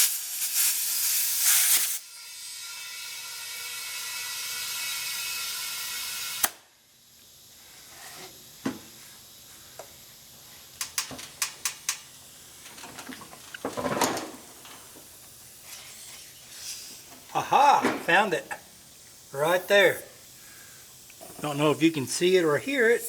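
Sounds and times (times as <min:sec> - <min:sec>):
compressed air hissing into tire: 0:00.0 - 0:13.6, 0:14.3 - 0:23.0
air valve click: 0:06.4 - 0:06.7, 0:10.8 - 0:12.8.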